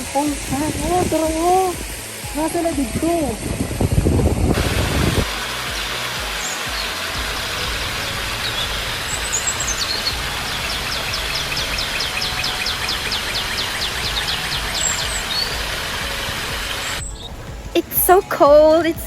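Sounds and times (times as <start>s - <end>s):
steady rushing noise: 0.0s - 19.0s
birds calling: 5.2s - 19.0s.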